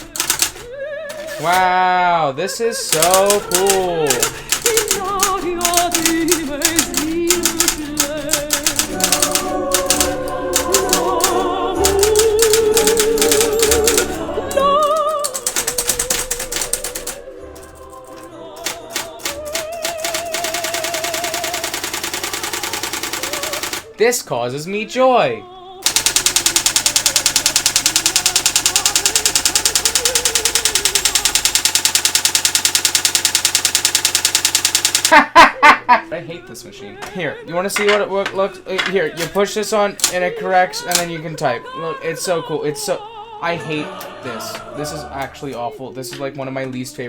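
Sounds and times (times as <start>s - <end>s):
electric typewriter typing: 0.0s - 1.8s, 2.8s - 24.0s, 25.8s - 35.3s, 39.2s - 41.2s
background music with singing: 0.0s - 34.4s, 35.9s - 47.0s.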